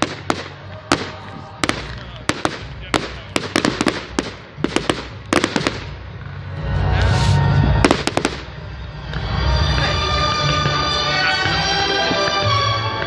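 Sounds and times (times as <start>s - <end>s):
fireworks cracks and bangs: 0.0s - 6.4s, 7.8s - 13.0s
deep rumble: 1.4s - 10.9s.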